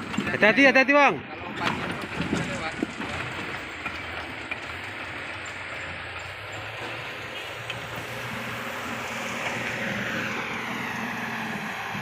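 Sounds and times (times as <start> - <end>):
vehicle engine running: 0.0 - 12.0
steady rushing noise: 5.9 - 12.0.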